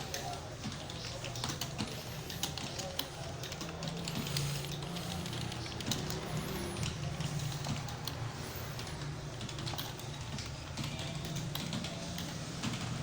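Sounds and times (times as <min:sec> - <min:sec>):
computer keyboard keys clicking: 0:00.0 - 0:13.0.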